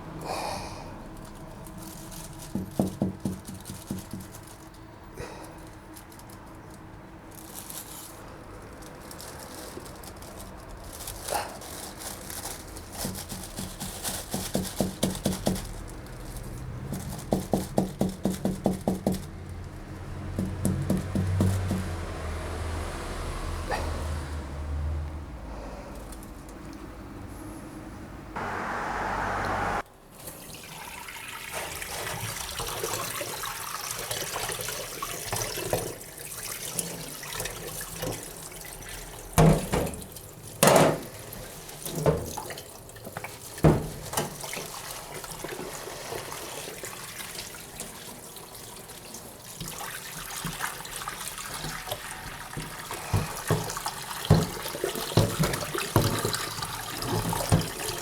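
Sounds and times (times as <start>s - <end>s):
knocks of objects in sink: 2.5s - 4.3s, 16.9s - 19.2s, 20.3s - 22.0s, 39.4s - 41.2s, 52.6s - 58.0s
water running from a tap: 30.3s - 58.0s.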